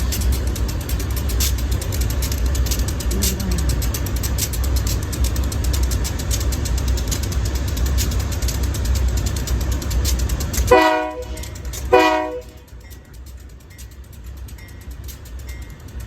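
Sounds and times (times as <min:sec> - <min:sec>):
diesel locomotive rumbling: 0:00.0 - 0:16.0
train air horn blasts: 0:10.7 - 0:12.7.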